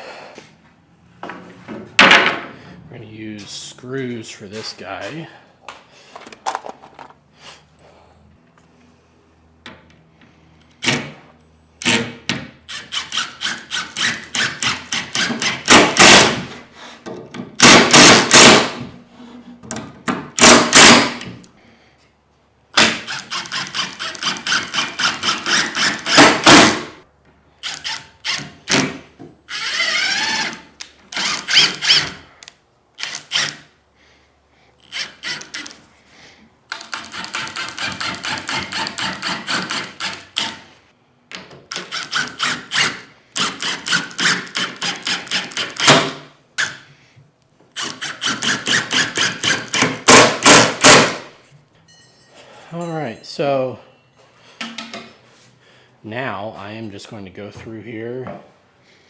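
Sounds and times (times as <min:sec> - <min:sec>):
cordless power driver driving screws: 0:20.4 - 0:21.3, 0:22.8 - 0:26.9, 0:29.5 - 0:32.2, 0:33.0 - 0:33.7, 0:34.8 - 0:35.8, 0:36.7 - 0:40.6, 0:41.7 - 0:46.8, 0:47.8 - 0:51.2.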